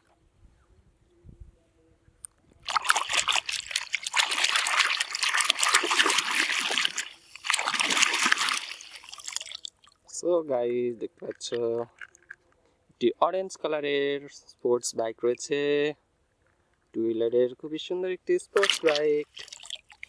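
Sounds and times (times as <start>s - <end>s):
water splashing on plastic toy: 2.7s - 10.0s, 18.6s - 20.0s.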